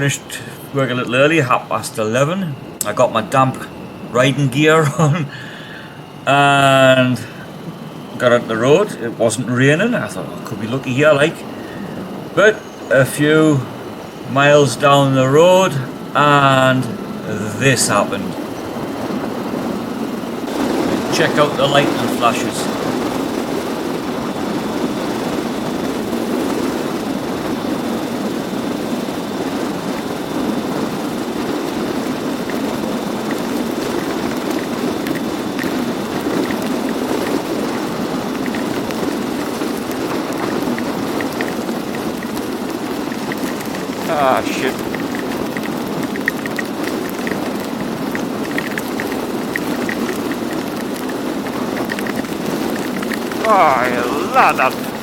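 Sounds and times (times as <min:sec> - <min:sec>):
raindrops ticking on microphone: 0:06.3 - 0:55.0
motorcycle road noise: 0:14.5 - 0:55.0
wind rush: 0:18.4 - 0:55.0.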